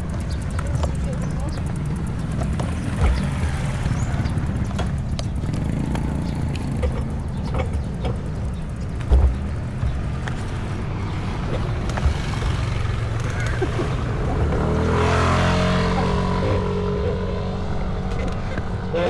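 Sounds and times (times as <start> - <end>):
small clicks and rattles: 0.0 - 14.7
bicycle riding rumble: 0.0 - 19.0.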